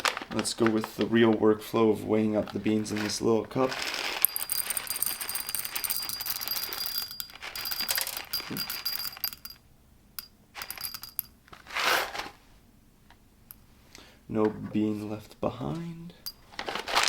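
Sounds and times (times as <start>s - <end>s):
coffee beans poured into a cup: 3.7s - 9.5s.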